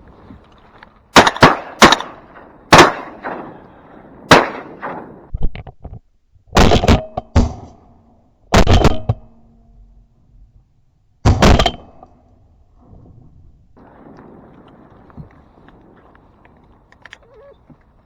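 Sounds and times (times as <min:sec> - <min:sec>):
shotgun shots: 0:01.1 - 0:05.3, 0:13.8 - 0:18.0.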